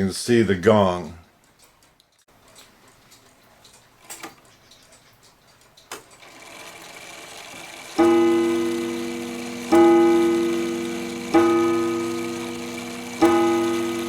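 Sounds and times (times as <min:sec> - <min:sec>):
clock mechanism whirring: 0:05.8 - 0:14.0
clock ticking: 0:07.8 - 0:14.0.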